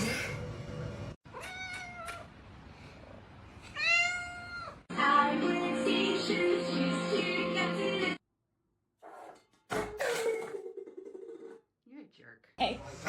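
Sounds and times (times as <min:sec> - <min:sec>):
cat meowing: 0:01.3 - 0:02.3, 0:03.7 - 0:04.8
music: 0:04.9 - 0:08.2.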